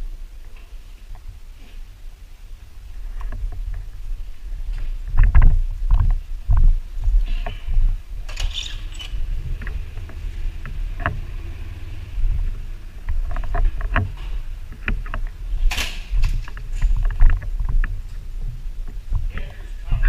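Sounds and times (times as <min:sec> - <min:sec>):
truck engine and road rumble: 0:00.0 - 0:19.5
clicks and rattles: 0:13.0 - 0:18.0.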